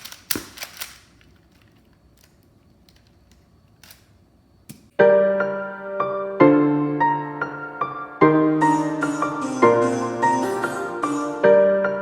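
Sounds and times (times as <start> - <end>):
piano music with held chords: 5.0 - 12.0.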